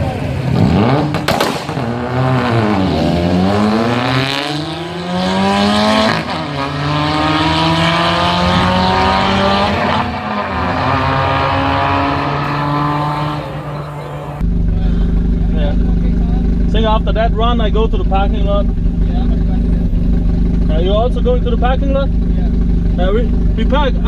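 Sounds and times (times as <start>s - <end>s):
car engine at full throttle: 0.0s - 24.0s
sharp bang: 1.1s - 2.1s.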